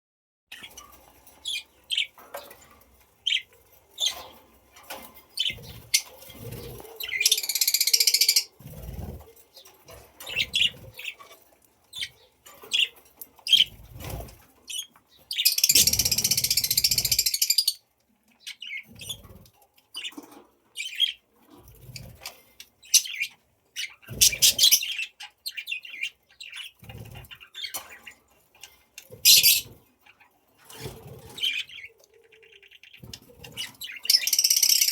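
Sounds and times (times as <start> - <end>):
budgerigars chirping: 5.4 - 8.5, 10.2 - 11.2, 14.7 - 17.8, 22.8 - 28.1, 29.2 - 30.3, 31.3 - 34.9.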